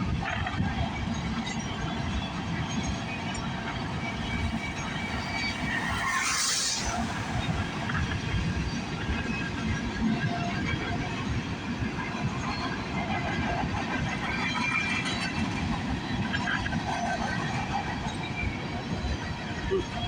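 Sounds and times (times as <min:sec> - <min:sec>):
freight cars rumbling and clattering: 0:00.0 - 0:20.0
faint wheel squealing: 0:03.9 - 0:08.2.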